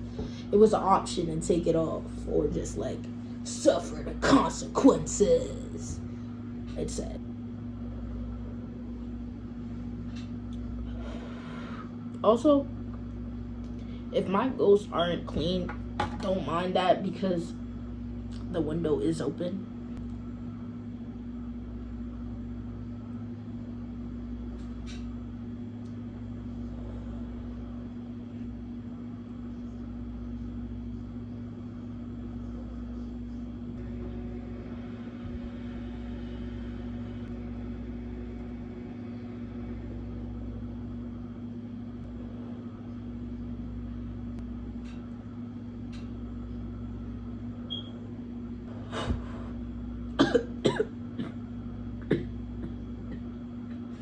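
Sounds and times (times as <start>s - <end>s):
low mechanical hum: 0.0s - 54.0s.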